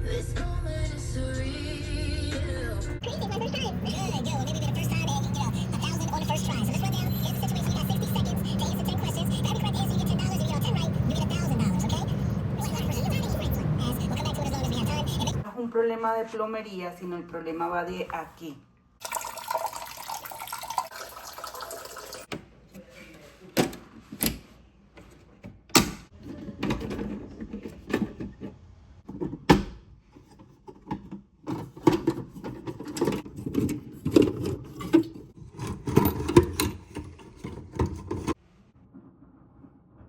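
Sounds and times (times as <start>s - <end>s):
water rushing: 19.0s - 22.3s.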